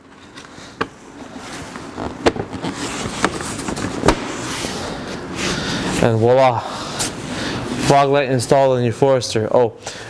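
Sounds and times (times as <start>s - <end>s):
plastic rustling: 0.2s - 6.1s.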